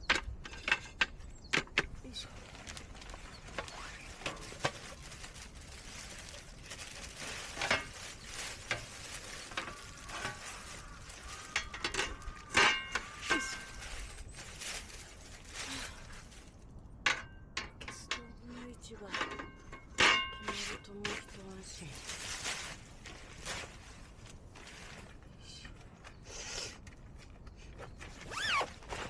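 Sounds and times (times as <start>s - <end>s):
objects knocking and clicking: 0.0s - 2.0s.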